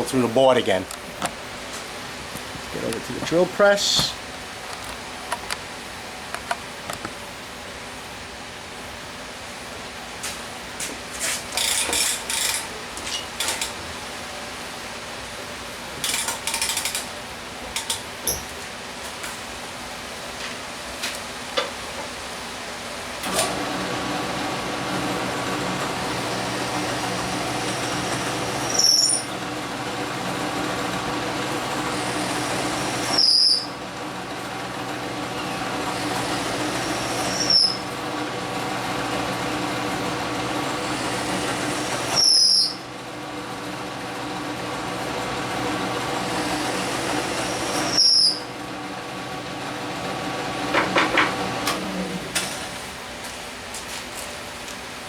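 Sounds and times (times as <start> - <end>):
drill press motor humming: 23.2 - 52.5
drill bit cutting wood squealing: 24.3 - 29.5, 31.7 - 33.8, 35.4 - 38.0, 40.6 - 42.9, 46.2 - 48.5.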